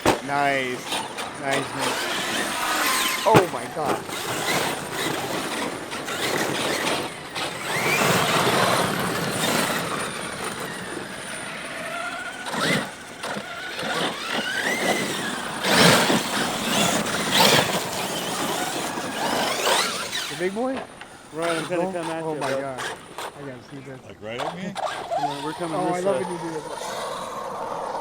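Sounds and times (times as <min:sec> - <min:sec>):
loud thumps: 0:00.0 - 0:00.3
tyres hissing on dirt: 0:00.0 - 0:10.0
electric motors whining: 0:00.0 - 0:28.0.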